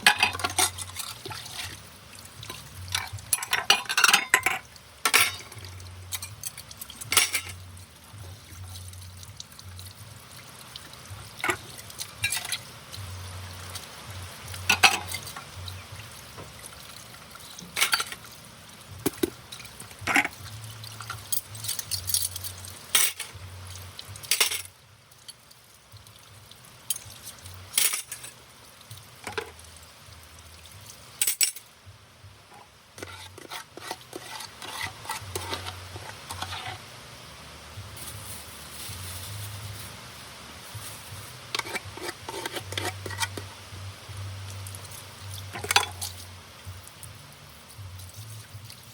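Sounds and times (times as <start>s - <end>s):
plates and cutlery clinking: 0.0s - 1.8s, 2.9s - 6.4s, 7.0s - 7.6s, 14.7s - 15.4s, 17.7s - 18.2s, 24.3s - 24.7s, 27.8s - 28.4s, 41.5s - 43.5s, 45.5s - 46.2s
running water: 0.0s - 48.9s
wet scrubbing: 33.0s - 36.8s, 40.7s - 43.6s.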